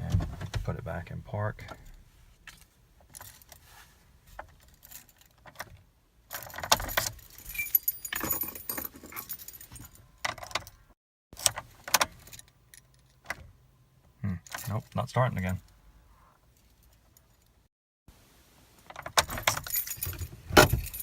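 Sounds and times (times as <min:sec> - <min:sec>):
car keys jangling: 0:04.4 - 0:10.8, 0:19.0 - 0:21.0.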